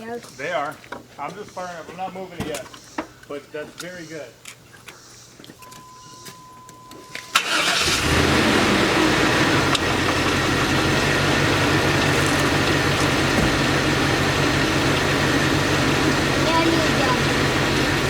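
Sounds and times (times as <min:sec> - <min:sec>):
steady beep: 0:05.6 - 0:07.4
engine cranking and idling: 0:07.1 - 0:18.0.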